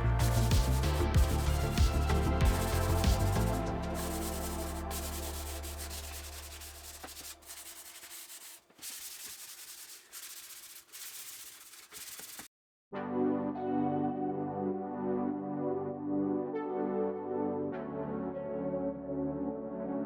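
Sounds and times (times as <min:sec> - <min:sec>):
sandpaper rubbing on wood: 0:00.1 - 0:12.5.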